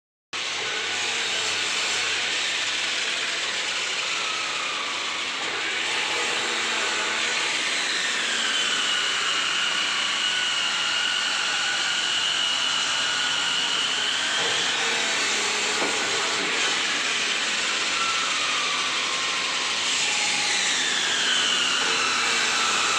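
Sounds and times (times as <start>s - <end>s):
power tool cutting wood: 0.4s - 22.9s.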